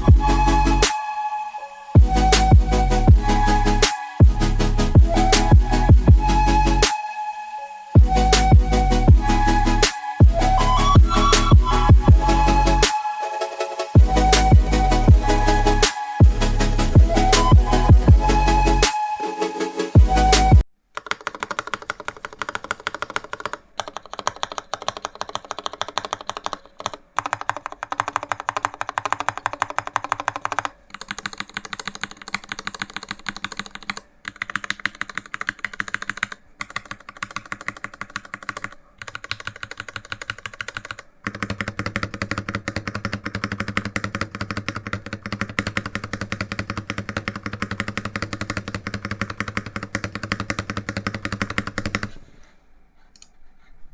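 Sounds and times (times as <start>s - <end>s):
mechanical keyboard typing: 21.0s - 52.2s.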